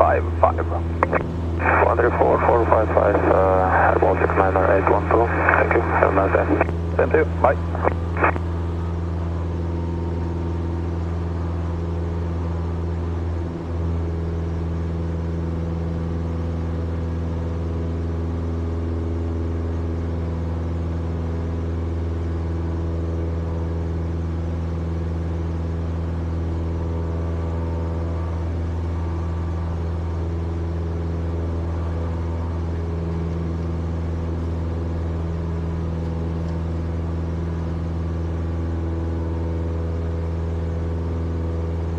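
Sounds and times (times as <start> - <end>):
plane engine droning in cabin: 0.0 - 8.9.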